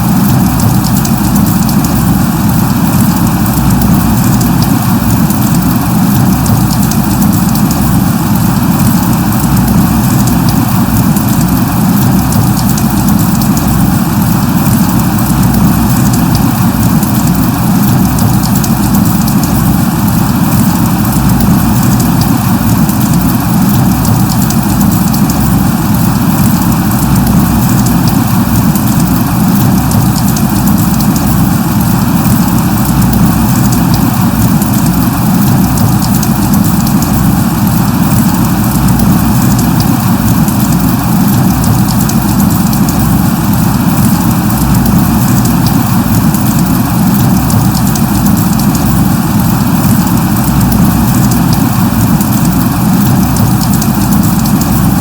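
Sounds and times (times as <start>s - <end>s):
light rain falling: 0.0s - 55.0s.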